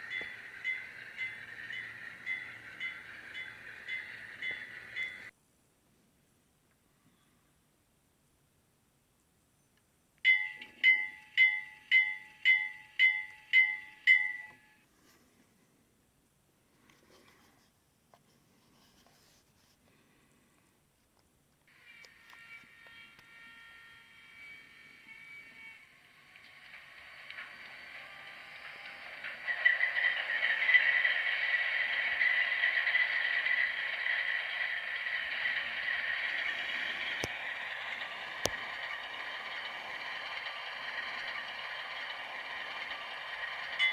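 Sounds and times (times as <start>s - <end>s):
model locomotive bell ringing: 0.0s - 5.3s, 10.2s - 14.9s, 22.3s - 43.9s
faint steady tone: 0.0s - 8.4s, 9.1s - 17.6s.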